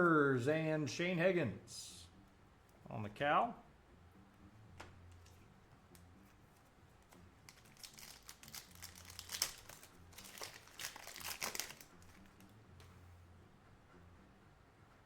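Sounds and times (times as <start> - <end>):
plastic packaging crinkling: 7.5 - 12.4.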